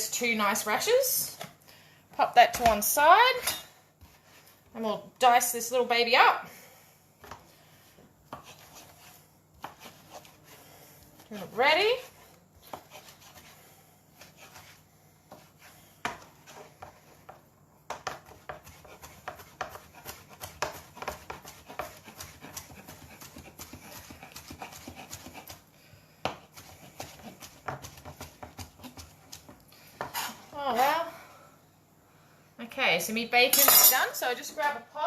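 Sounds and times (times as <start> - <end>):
knife chopping on cutting board: 8.3 - 10.5, 11.4 - 13.5, 14.2 - 25.6, 26.2 - 30.4.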